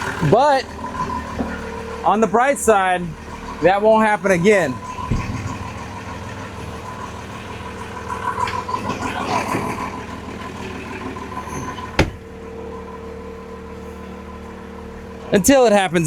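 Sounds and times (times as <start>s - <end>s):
sharp knock: 12.0s - 12.3s.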